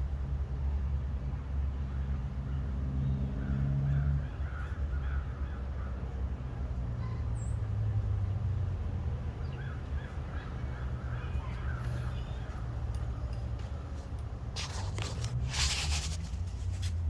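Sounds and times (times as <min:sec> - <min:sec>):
crows cawing: 0:03.4 - 0:06.0, 0:09.6 - 0:12.6.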